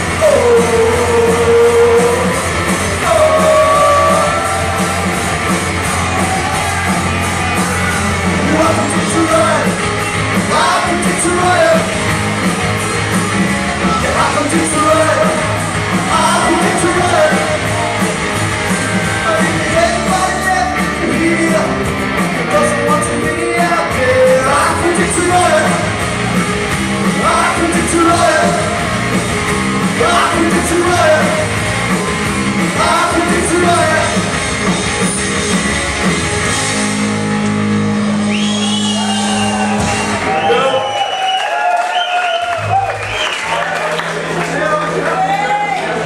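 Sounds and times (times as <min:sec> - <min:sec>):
person singing and shouting: 0:00.0 - 0:04.8, 0:10.4 - 0:12.0, 0:13.9 - 0:17.8, 0:27.2 - 0:28.9, 0:30.0 - 0:31.6, 0:32.8 - 0:34.3
live rock band playing: 0:00.0 - 0:46.0.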